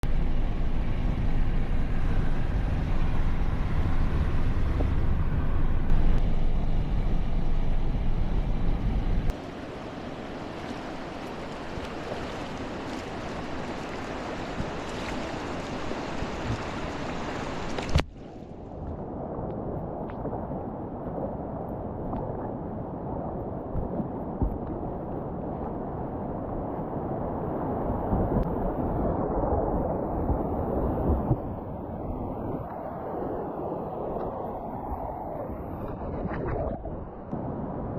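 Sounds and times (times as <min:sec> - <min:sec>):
rushing river water: 0:09.3 - 0:19.2
faint clicks and splashes: 0:10.6 - 0:20.4.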